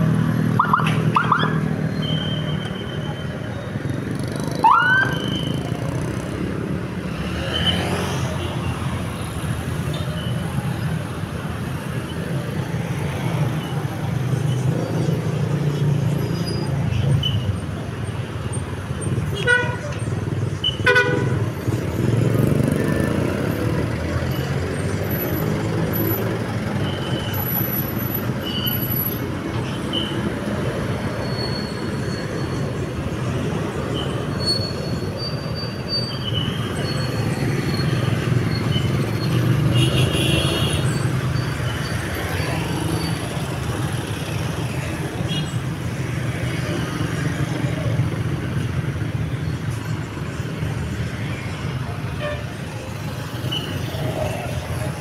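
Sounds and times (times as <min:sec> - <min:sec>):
traffic rumble: 0:00.0 - 0:55.0.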